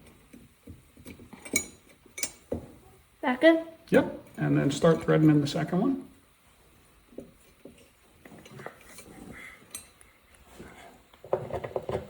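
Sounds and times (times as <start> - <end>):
light metal clinks and taps: 0.0 - 2.8, 7.0 - 10.1.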